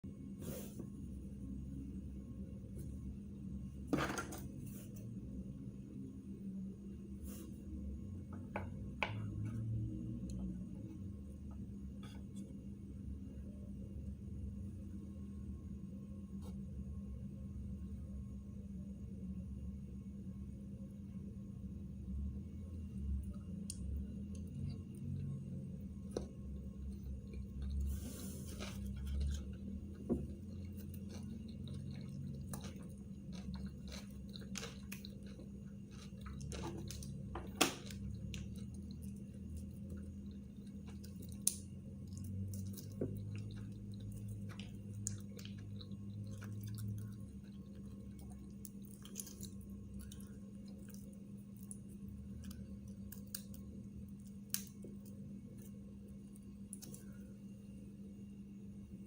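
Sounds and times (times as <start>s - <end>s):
steady low hum: 0.0s - 59.0s
person chewing: 26.1s - 55.8s.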